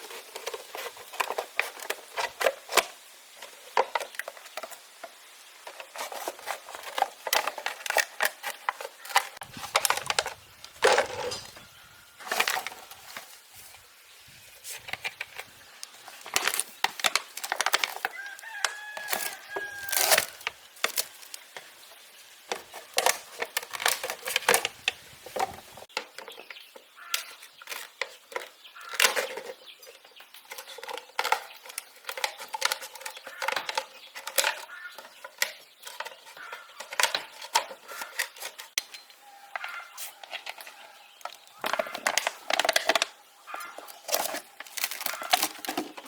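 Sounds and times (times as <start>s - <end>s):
rooster crowing: 18.0s - 20.5s
chickens clucking: 36.0s - 46.0s.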